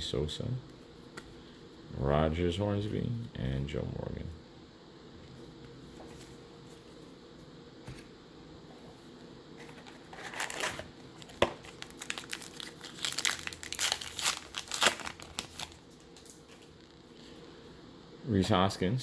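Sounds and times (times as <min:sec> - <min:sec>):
wrapper crinkling and tearing: 0:10.1 - 0:17.0.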